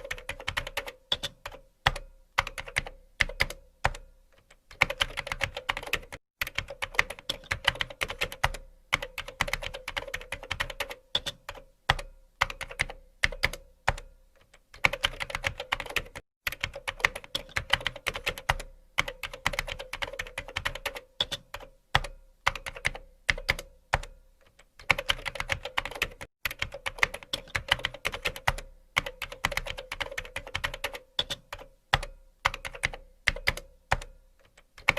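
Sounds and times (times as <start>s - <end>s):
computer keyboard typing: 0.0s - 34.9s.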